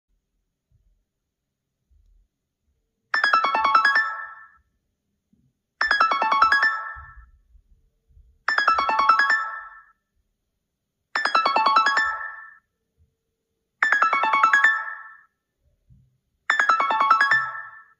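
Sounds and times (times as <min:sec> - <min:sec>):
phone ringtone: 0:03.1 - 0:04.7, 0:05.8 - 0:07.4, 0:08.5 - 0:10.0, 0:11.2 - 0:12.7, 0:13.8 - 0:15.4, 0:16.5 - 0:17.9.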